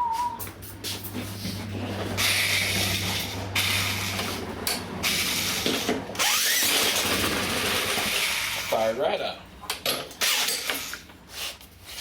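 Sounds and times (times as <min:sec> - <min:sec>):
small engine being cranked by drill: 0:02.2 - 0:04.4, 0:05.0 - 0:08.9, 0:10.2 - 0:11.0.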